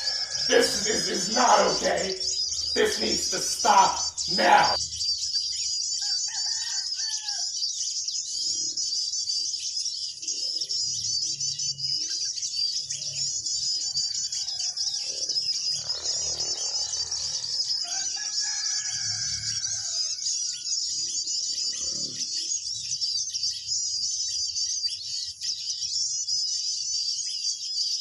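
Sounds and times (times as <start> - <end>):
lower whistled bird calls: 0.0 - 2.8
small birds chirping: 0.0 - 28.0.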